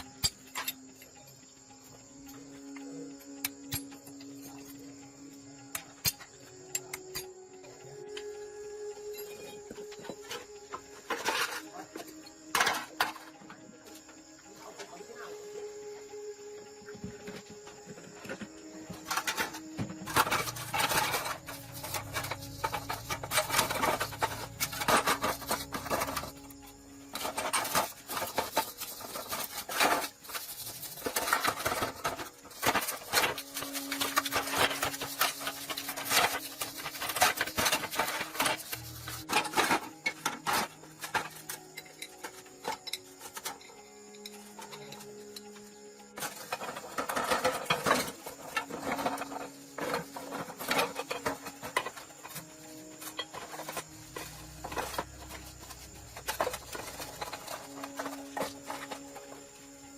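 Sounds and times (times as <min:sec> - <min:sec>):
hand tools clinking on metal: 0:00.0 - 0:01.2, 0:18.2 - 0:45.6, 0:46.2 - 0:59.8
faint background music: 0:00.0 - 0:59.9.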